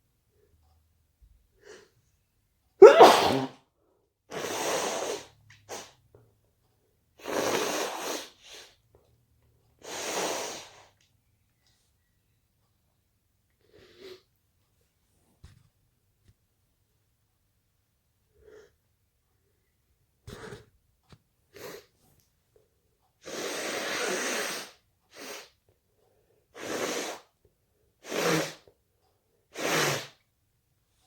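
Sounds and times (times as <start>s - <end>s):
person sneezing: 2.8s - 3.6s.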